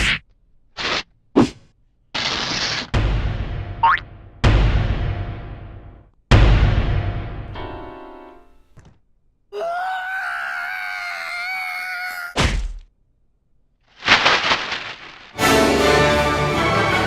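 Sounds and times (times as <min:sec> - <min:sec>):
loud thump: 0:03.0 - 0:07.6
high-pitched cartoon moan: 0:09.5 - 0:12.4.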